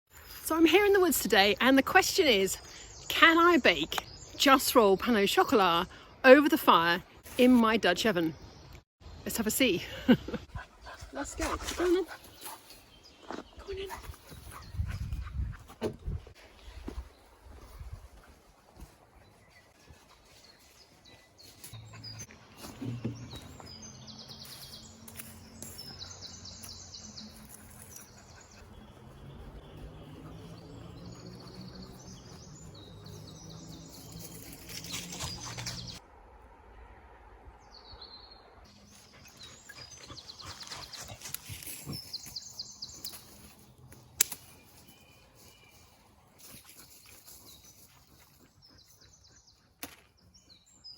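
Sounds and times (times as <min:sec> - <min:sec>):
birds singing: 0:00.3 - 0:07.0, 0:19.2 - 0:36.0, 0:37.6 - 0:50.9.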